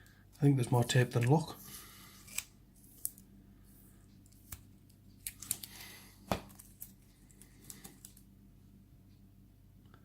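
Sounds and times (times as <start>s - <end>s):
tape crackling and clicking: 4.1s - 8.3s.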